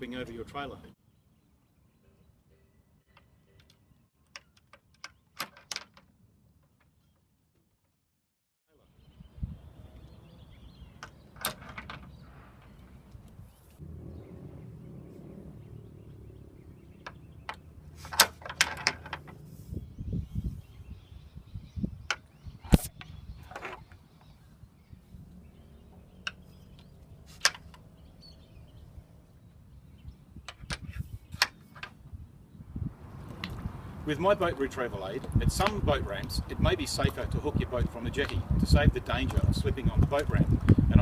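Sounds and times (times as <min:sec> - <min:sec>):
low hum: 0:12.4 - 0:18.0.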